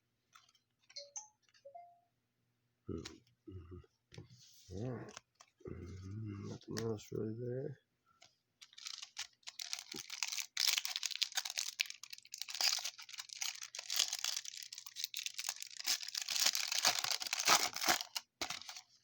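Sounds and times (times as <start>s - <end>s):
wrapper tearing and crinkling: 8.6s - 19.0s.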